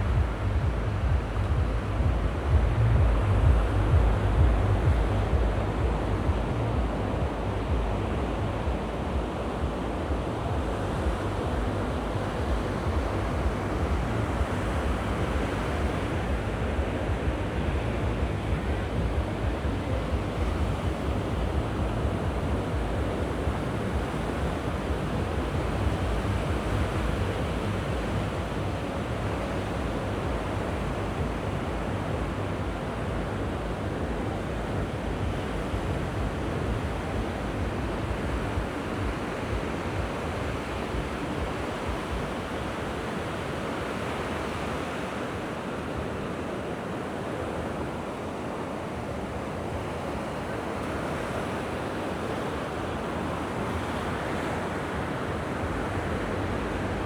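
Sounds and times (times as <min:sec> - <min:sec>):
wind buffeting microphone: 0:00.0 - 0:43.9
sea waves washing ashore: 0:00.0 - 0:57.0.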